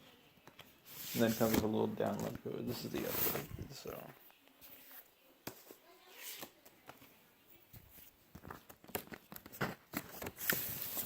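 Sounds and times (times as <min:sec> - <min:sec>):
vinyl record handling clicks and rustles: 0:00.4 - 0:04.3, 0:07.9 - 0:11.0.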